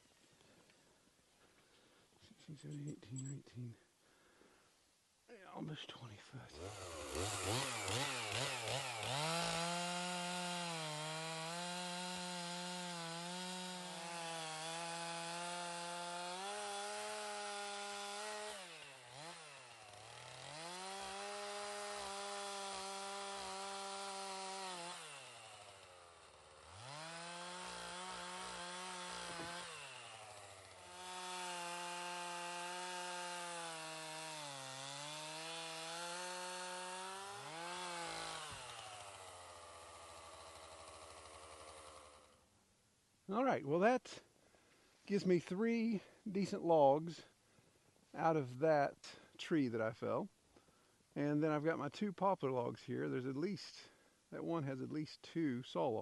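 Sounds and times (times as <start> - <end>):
chainsaw cutting log: 6.5 - 42.5.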